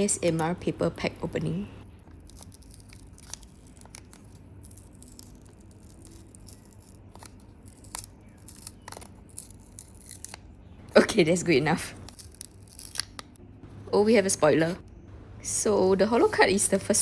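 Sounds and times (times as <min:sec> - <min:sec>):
card pack paper tearing: 0:02.1 - 0:13.3.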